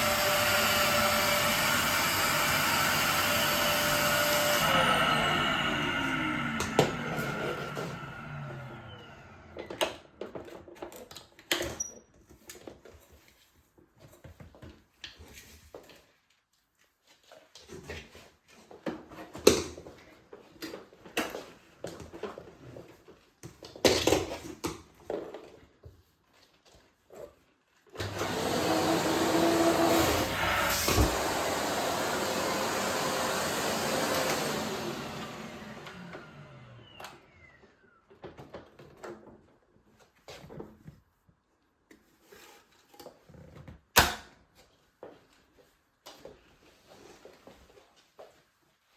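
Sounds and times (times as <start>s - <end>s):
vacuum cleaner running: 0.0s - 10.0s, 28.0s - 38.0s.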